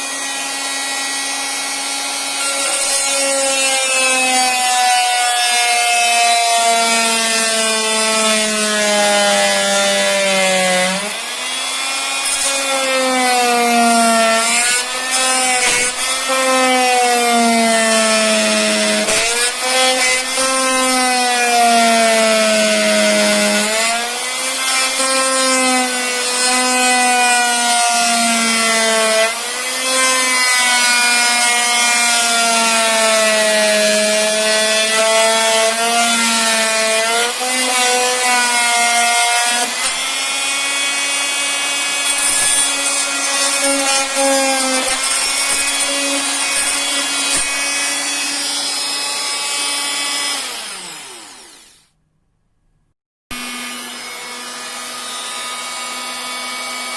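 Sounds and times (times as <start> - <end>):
multi-tool buzzing whine: 36.5 - 51.9.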